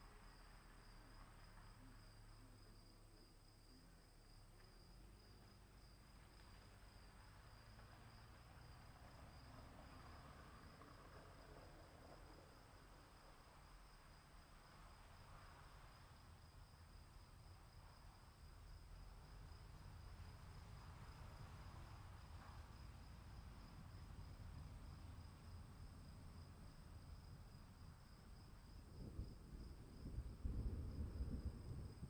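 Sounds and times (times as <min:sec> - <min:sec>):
crickets trilling: 0:12.1 - 0:32.0
distant thunder rumbling: 0:24.4 - 0:32.0.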